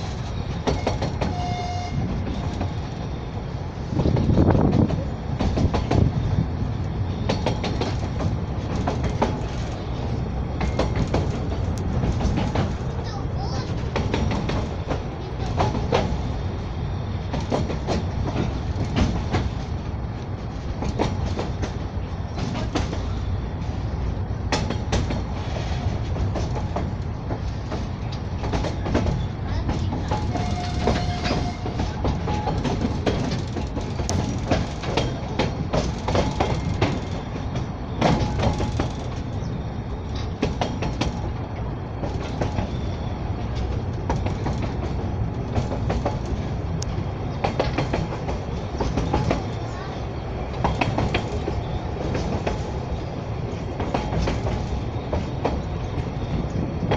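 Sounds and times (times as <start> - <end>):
train carriage rumbling: 0.0 - 56.9
wheels clacking over rail joints: 0.0 - 56.9.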